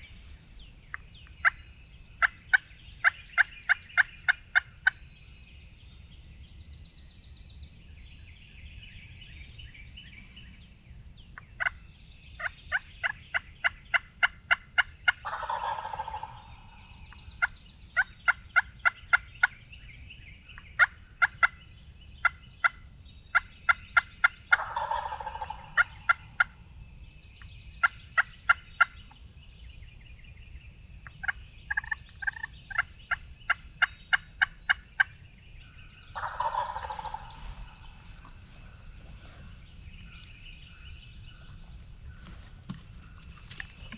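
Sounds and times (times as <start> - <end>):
faint songbird calls: 0.0 - 43.9
turkey gobbling: 14.8 - 17.2, 24.5 - 26.6, 36.1 - 43.9.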